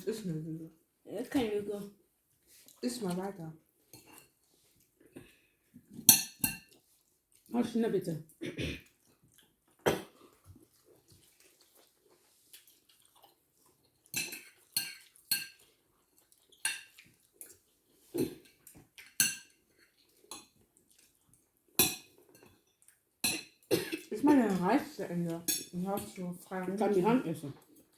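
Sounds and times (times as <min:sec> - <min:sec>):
cutlery clinking on plates: 0:03.9 - 0:04.4, 0:06.0 - 0:06.8, 0:14.0 - 0:15.7, 0:16.6 - 0:20.6, 0:21.8 - 0:24.7.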